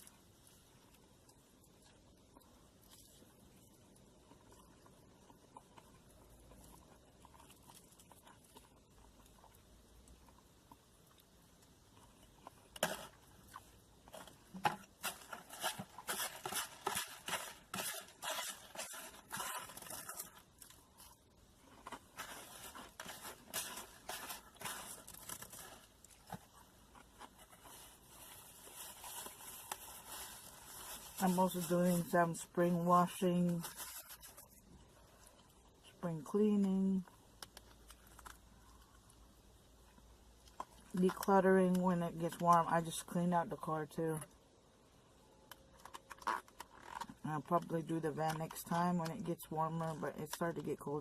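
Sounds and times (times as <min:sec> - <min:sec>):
crunchy chewing: 0:00.0 - 0:31.3.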